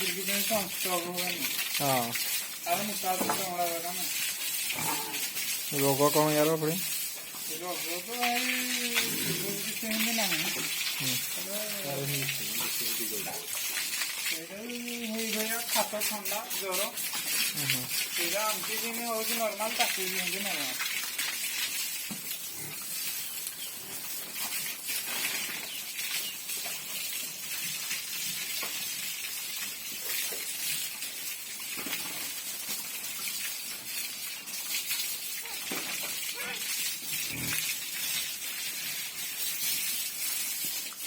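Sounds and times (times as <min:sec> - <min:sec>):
pigs grunting and snuffling: 0:04.7 - 0:05.4, 0:08.9 - 0:09.8, 0:22.4 - 0:23.2, 0:37.1 - 0:37.8.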